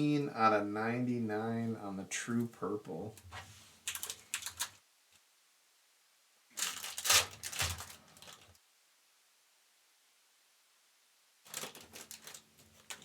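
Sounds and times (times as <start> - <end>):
trading cards rustling and flicking: 6.6 - 8.6, 11.5 - 13.0.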